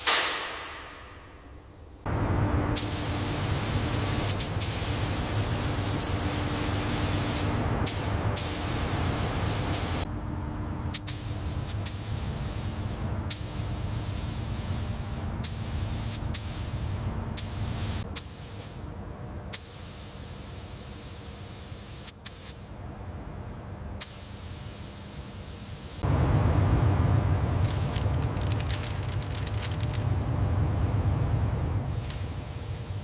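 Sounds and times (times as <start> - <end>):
low machine hum: 0.0 - 14.0, 26.0 - 33.0.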